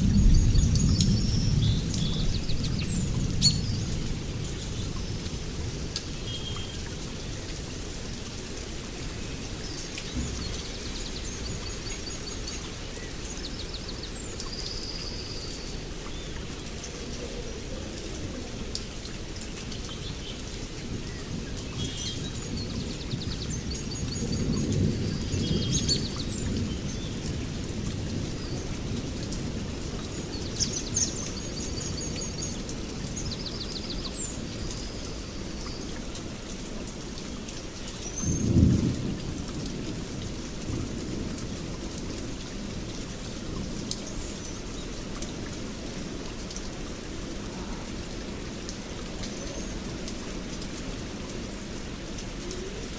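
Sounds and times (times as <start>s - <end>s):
low thunder rumbles: 0.0s - 6.0s, 10.0s - 12.9s, 20.9s - 30.0s, 38.2s - 44.1s
steady rain: 0.0s - 52.9s.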